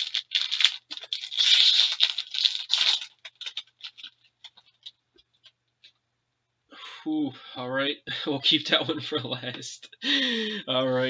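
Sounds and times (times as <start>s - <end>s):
packaging tearing and crinkling: 0.0s - 5.0s
small clicks and rustles: 3.0s - 6.0s.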